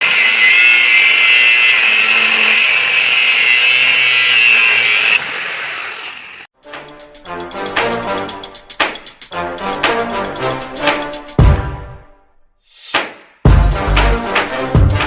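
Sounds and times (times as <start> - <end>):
power tool high whine: 0.0 - 6.5.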